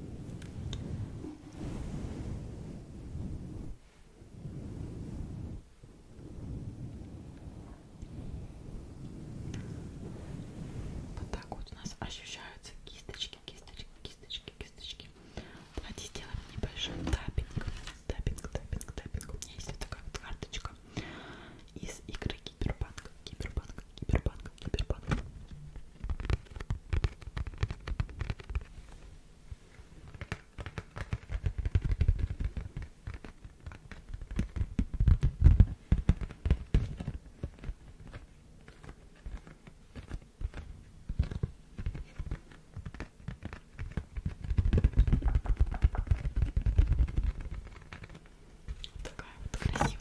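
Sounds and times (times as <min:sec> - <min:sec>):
low rubbing noise: 0:00.0 - 0:11.6
close-up scratching and tapping: 0:15.8 - 0:20.8, 0:21.8 - 0:50.0.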